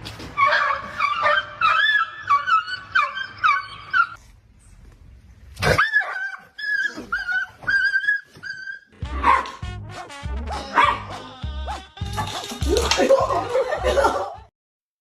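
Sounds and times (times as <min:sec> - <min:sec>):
dog whining and yipping: 0:00.4 - 0:04.2, 0:05.8 - 0:09.0
music with deep beat: 0:09.0 - 0:14.1.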